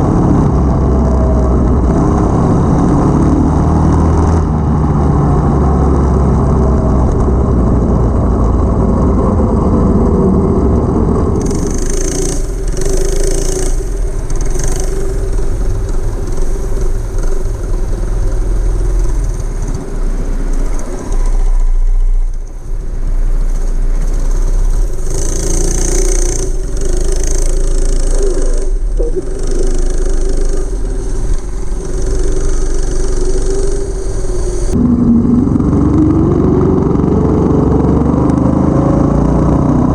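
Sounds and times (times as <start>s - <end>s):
go-kart engine running: 0.0s - 39.9s
rushing hiss: 29.3s - 34.8s.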